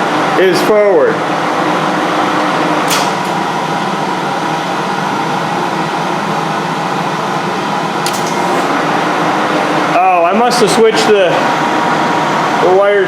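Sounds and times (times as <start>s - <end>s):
lathe motor humming: 2.6s - 9.6s.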